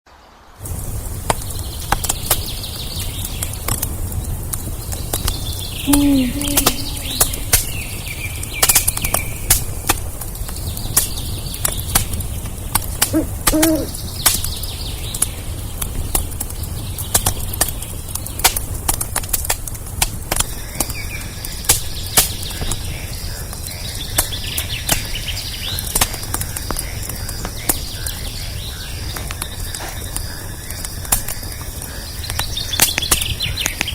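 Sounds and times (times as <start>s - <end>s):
campfire crackling: 0.5s - 33.9s
birds chirping: 1.1s - 18.8s, 20.4s - 33.9s
low falling call: 5.7s - 8.2s, 13.1s - 14.0s.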